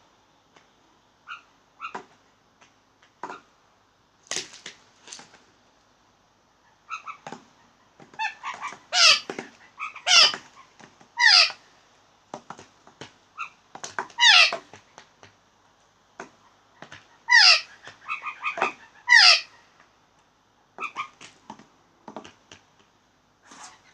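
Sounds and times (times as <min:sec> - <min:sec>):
blue jays calling: 0:06.7 - 0:11.6, 0:13.4 - 0:14.7, 0:16.6 - 0:19.7.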